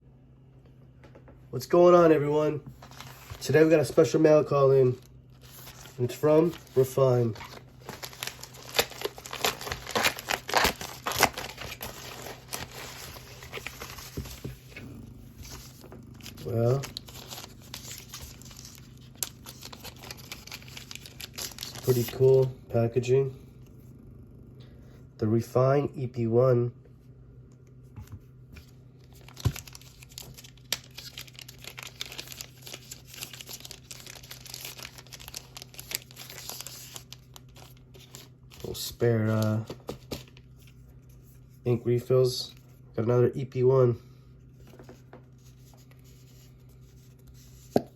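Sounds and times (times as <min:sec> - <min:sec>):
packaging crinkling: 0:02.7 - 0:04.1, 0:04.8 - 0:14.7, 0:15.3 - 0:22.5, 0:29.0 - 0:40.5
packaging tearing: 0:05.0 - 0:14.5, 0:15.4 - 0:22.5, 0:29.0 - 0:38.8.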